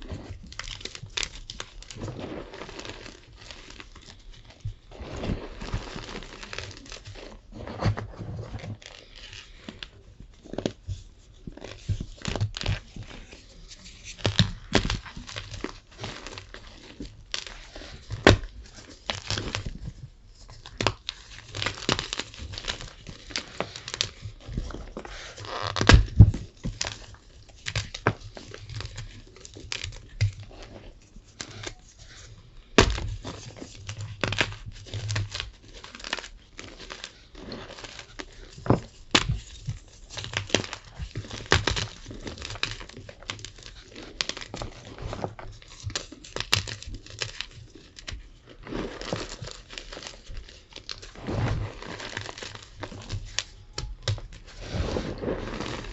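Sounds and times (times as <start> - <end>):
chalk crunching by hand: 54.2 - 55.9.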